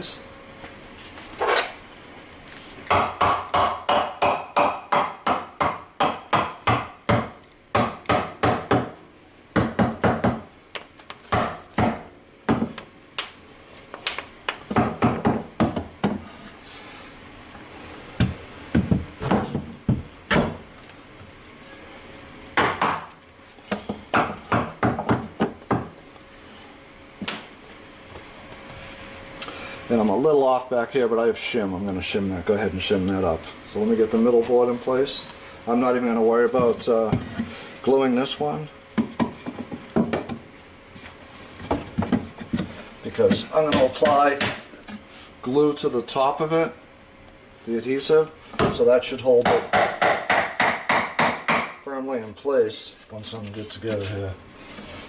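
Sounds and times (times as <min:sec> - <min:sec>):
hammer tapping wood: 0:02.9 - 0:08.9, 0:49.4 - 0:51.8.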